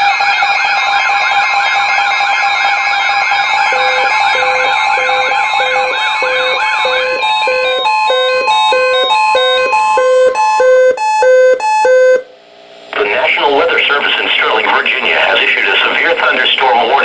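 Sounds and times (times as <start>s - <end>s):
warbling siren glides: 0.0s - 12.2s
beeping alarm: 0.0s - 12.3s
higher stepped beeps: 3.5s - 12.2s.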